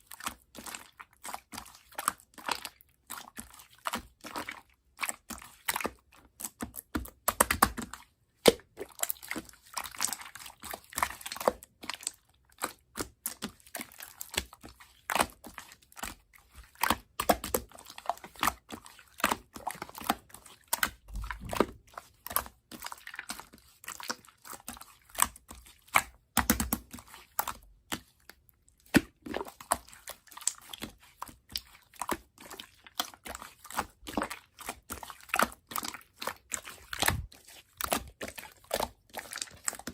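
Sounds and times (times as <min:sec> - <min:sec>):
crunching and crinkling: 0:26.8 - 0:39.9.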